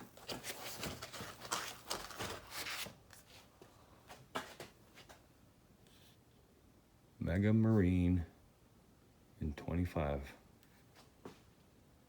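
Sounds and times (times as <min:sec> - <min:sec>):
packaging rustling and scraping: 0:00.0 - 0:03.5.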